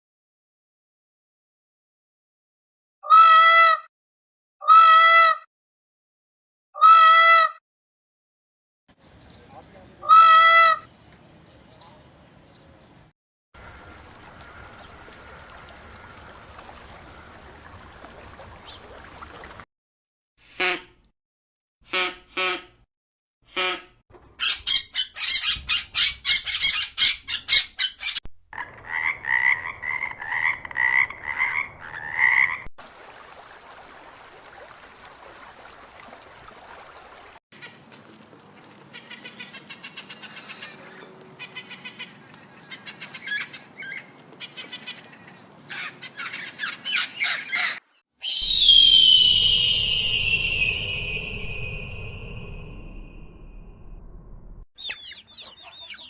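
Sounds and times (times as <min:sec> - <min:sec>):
animal pulsing calls: 0:48.2 - 0:51.5.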